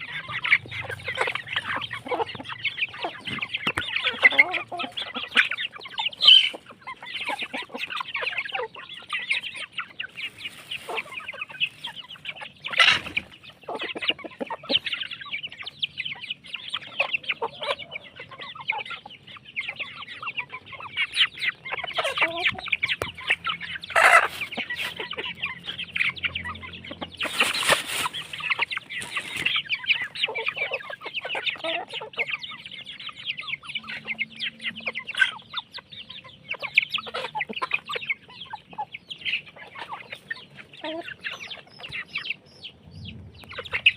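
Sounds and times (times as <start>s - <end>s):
chickens clucking and calling: 0.0s - 43.9s.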